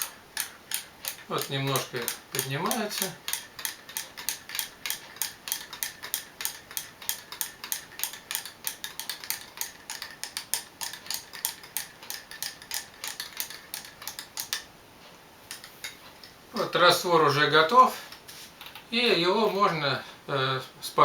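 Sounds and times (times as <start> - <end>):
spoon clinking in a mug: 7.1 - 14.6.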